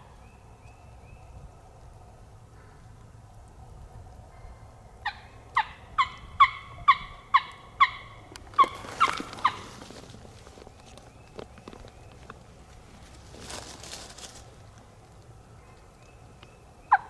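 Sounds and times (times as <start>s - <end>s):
turkey yelps: 5.0s - 9.8s.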